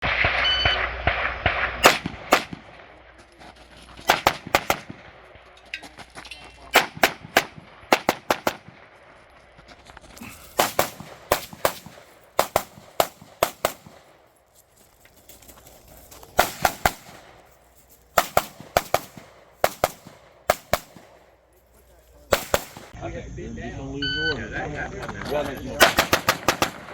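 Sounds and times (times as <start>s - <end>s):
rapid gunshots: 0.0s - 2.9s, 4.0s - 5.2s, 6.7s - 8.9s, 10.6s - 14.1s, 16.4s - 17.4s, 18.2s - 21.2s, 22.3s - 23.0s, 25.8s - 26.9s
electronic timer tone: 0.4s - 0.9s, 23.8s - 24.5s.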